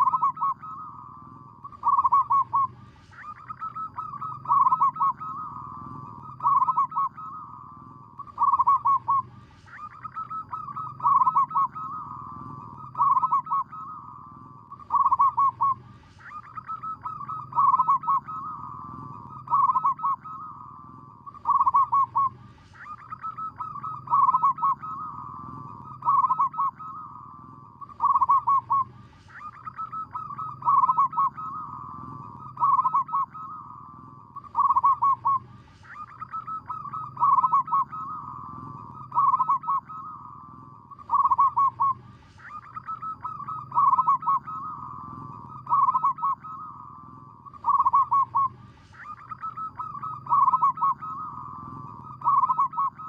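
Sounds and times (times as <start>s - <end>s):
dove cooing: 0.0s - 53.0s
faint low hum: 0.0s - 53.0s.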